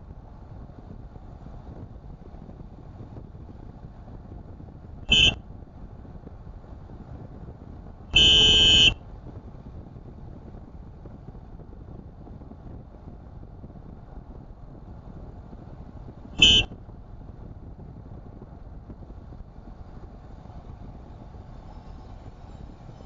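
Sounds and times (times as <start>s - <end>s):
car driving road noise: 0.0s - 23.0s
car horn: 5.1s - 5.4s, 8.1s - 9.0s, 16.4s - 16.7s.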